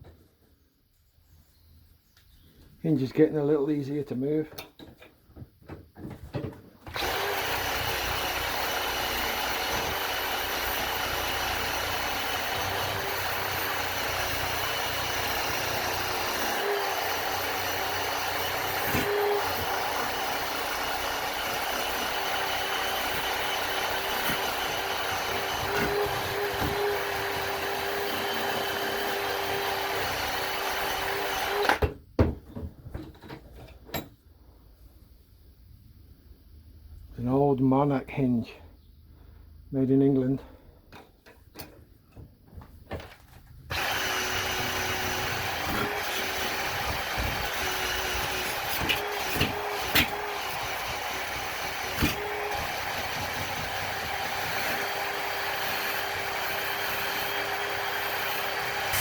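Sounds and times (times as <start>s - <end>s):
handheld power tool running: 6.9s - 31.9s, 43.0s - 59.0s.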